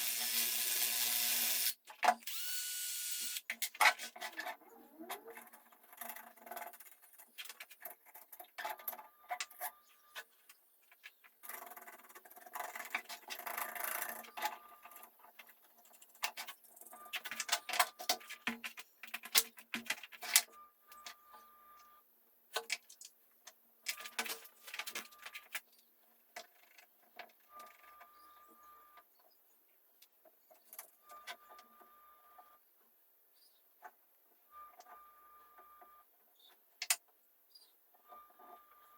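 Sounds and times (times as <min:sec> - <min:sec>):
small power tool motor: 0:00.0 - 0:03.5.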